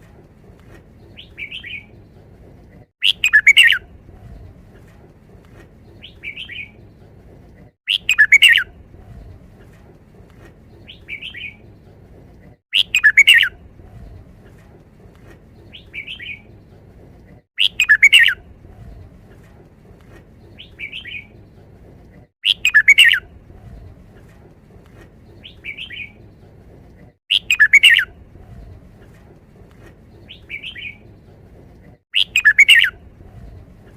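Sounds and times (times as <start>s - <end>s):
bird singing loud song phrase: 32.2s - 33.0s.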